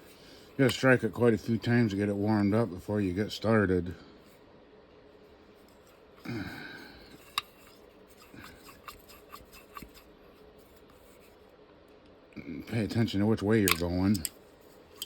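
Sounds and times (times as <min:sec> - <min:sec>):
small clicks and taps on metal: 0:13.6 - 0:14.4.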